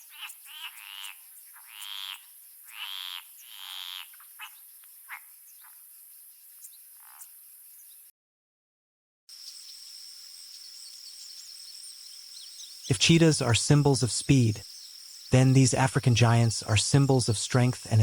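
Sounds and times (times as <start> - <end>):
raspy croaking animal calls: 0.0 - 5.9, 6.8 - 7.4
high insect drone: 0.0 - 8.1, 9.3 - 18.0.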